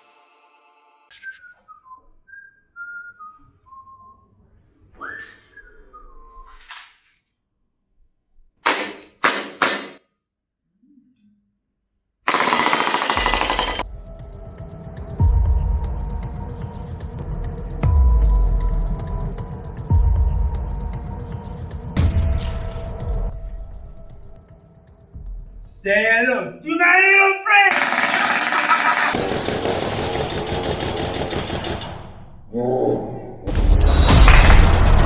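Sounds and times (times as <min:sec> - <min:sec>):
music: 0:00.0 - 0:01.6, 0:13.2 - 0:26.4, 0:33.5 - 0:35.0
whistled tune: 0:01.1 - 0:06.7
airsoft gun shots: 0:08.6 - 0:10.0, 0:12.3 - 0:13.8, 0:27.7 - 0:29.7, 0:34.1 - 0:35.0
burst of noise: 0:33.5 - 0:35.0.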